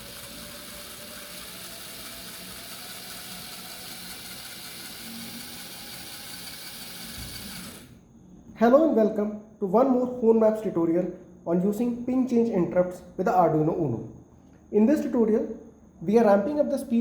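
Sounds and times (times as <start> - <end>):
small electric motor whirring: 0.0 - 8.0.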